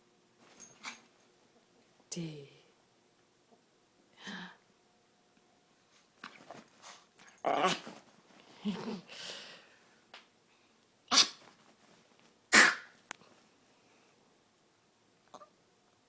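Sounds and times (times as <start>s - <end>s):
puppy coughing: 11.1s - 11.4s, 12.5s - 13.0s
puppy sneezing: 11.1s - 11.5s, 12.5s - 13.0s.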